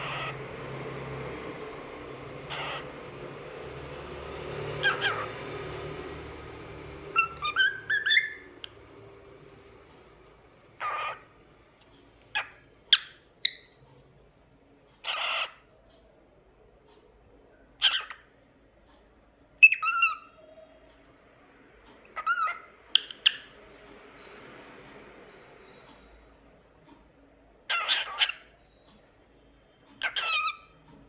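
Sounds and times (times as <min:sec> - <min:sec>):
cockatiel chirping and whistling: 0:00.0 - 0:00.4, 0:02.4 - 0:03.0, 0:04.5 - 0:05.9, 0:07.0 - 0:08.8, 0:10.8 - 0:11.2, 0:12.3 - 0:13.8, 0:19.6 - 0:20.5, 0:22.2 - 0:23.6, 0:27.7 - 0:29.1, 0:30.0 - 0:30.8.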